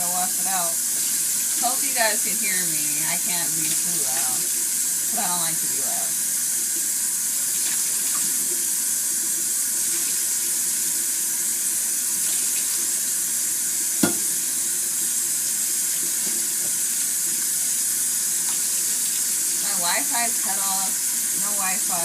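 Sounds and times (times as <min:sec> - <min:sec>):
tap running into a sink: 0:07.6 - 0:08.6, 0:14.0 - 0:14.5, 0:15.9 - 0:17.4
sharp knock: 0:14.0 - 0:14.4.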